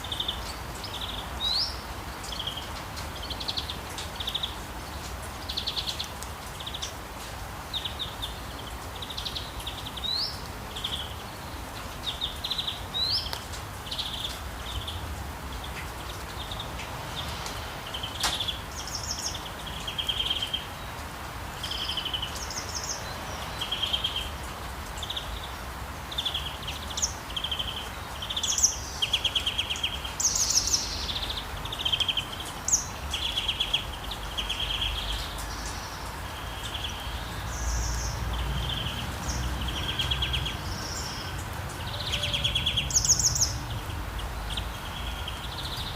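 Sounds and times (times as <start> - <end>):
soft rain hiss: 0.0 - 45.9
birds chirping and calling: 24.9 - 45.9.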